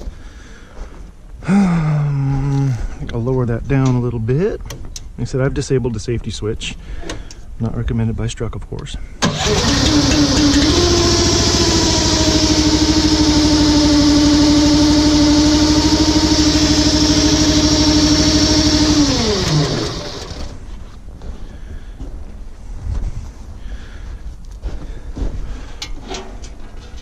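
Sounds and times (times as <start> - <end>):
crawler engine running and winding down: 9.2 - 20.6.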